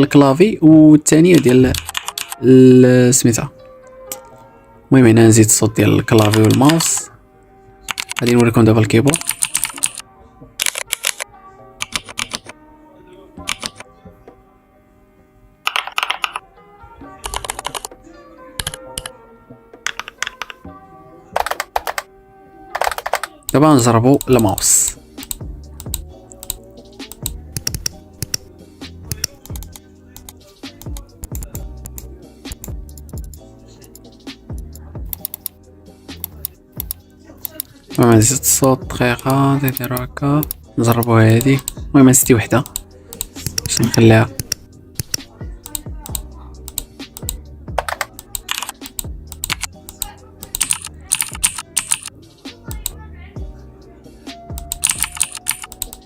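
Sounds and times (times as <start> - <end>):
rapid mouse clicks: 1.4 - 2.4, 6.2 - 7.0, 7.9 - 8.4, 9.0 - 10.0, 10.6 - 11.2, 11.8 - 12.6, 13.4 - 13.8, 15.7 - 16.4, 17.2 - 17.9, 18.6 - 19.1, 19.9 - 20.6, 21.4 - 22.1, 22.8 - 28.5, 29.1 - 35.6, 36.2 - 37.7, 39.2 - 41.8, 42.6 - 52.1, 54.5 - 56.0
background music with a beat: 21.4 - 22.1, 22.8 - 56.0.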